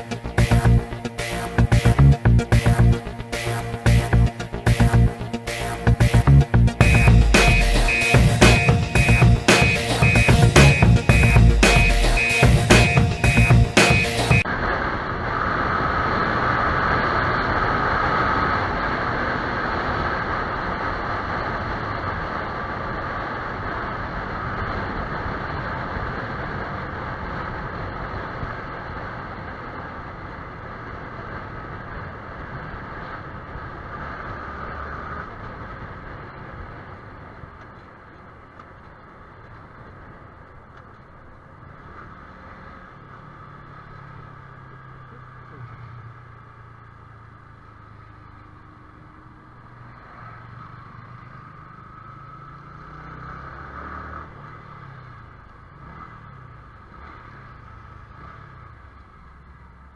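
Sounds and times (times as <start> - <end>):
motorcycle engine and wind noise: 14.6 - 59.9.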